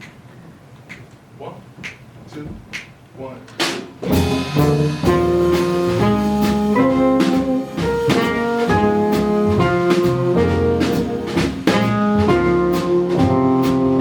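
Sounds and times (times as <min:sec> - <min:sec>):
jazz combo playing: 0:04.0 - 0:14.0.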